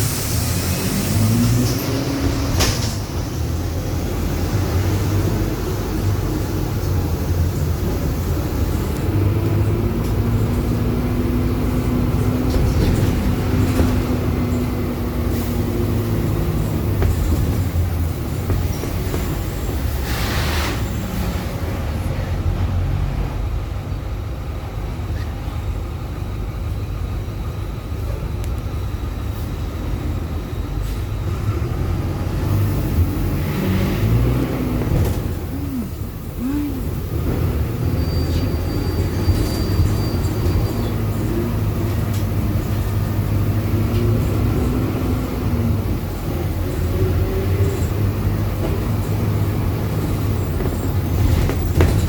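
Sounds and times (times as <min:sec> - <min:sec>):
bus engine running: 0:00.0 - 0:52.0
short air hiss: 0:20.0 - 0:21.0.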